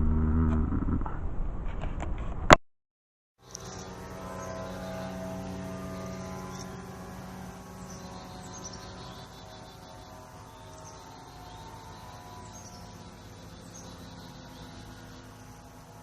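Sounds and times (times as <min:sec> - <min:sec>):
birds chirping: 0:03.4 - 0:16.0
low steady drone: 0:03.4 - 0:16.0.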